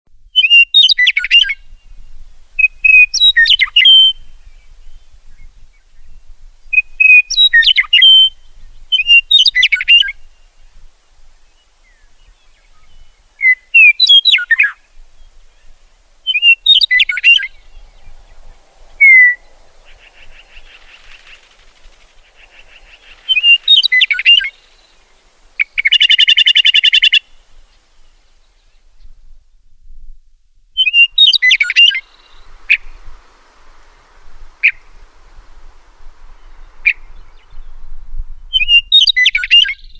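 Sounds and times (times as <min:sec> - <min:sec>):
bird whistled song: 0:00.4 - 0:10.7, 0:11.5 - 0:29.1, 0:30.8 - 0:39.9
harsh buzzy rattling bird call: 0:19.0 - 0:27.3.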